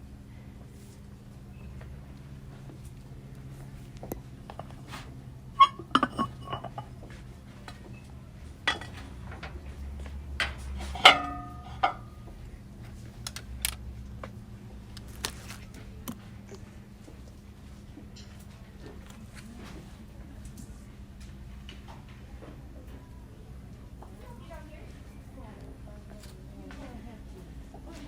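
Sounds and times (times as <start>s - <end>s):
steady low hum: 0.0s - 28.0s
hard objects clinking and knocking: 5.6s - 7.0s.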